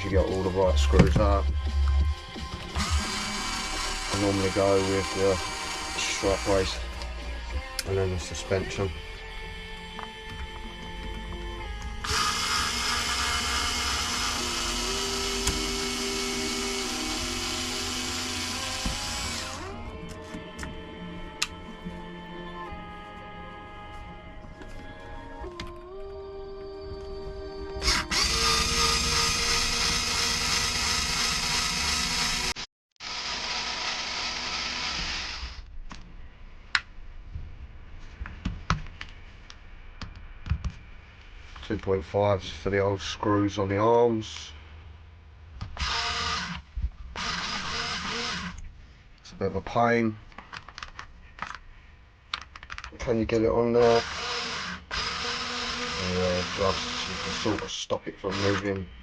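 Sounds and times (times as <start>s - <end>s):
electric power tool whining: 0.0s - 9.2s, 9.8s - 20.7s, 27.8s - 35.7s, 45.8s - 46.6s, 47.2s - 48.6s, 53.9s - 58.9s
screws and tools clicking: 27.8s - 32.5s.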